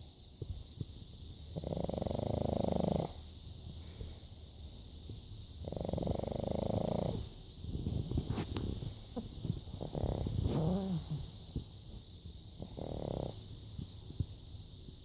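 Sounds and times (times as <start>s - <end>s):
dog snoring: 1.4s - 3.2s, 5.6s - 8.8s, 9.7s - 11.3s, 12.6s - 13.5s
dog snorts and snuffles: 1.5s - 3.2s, 5.6s - 7.4s, 8.1s - 11.3s, 12.6s - 13.4s.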